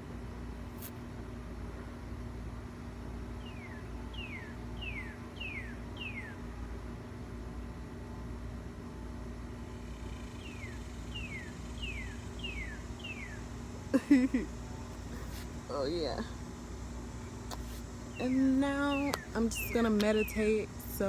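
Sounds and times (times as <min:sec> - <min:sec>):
songbird whistles: 0:03.4 - 0:06.4, 0:10.4 - 0:13.4.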